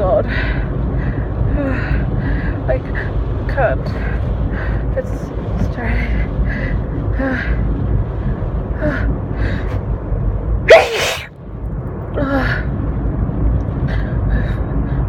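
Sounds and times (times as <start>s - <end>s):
car cabin road rumble: 0.0s - 15.0s
woman gasping in-breaths: 10.7s - 11.3s
woman sneezing: 10.7s - 11.3s.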